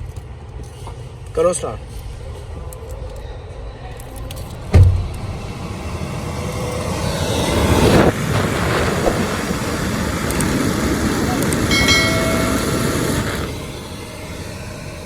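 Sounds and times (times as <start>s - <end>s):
car engine rushing noise: 4.6s - 14.5s
loud thump: 4.7s - 5.3s.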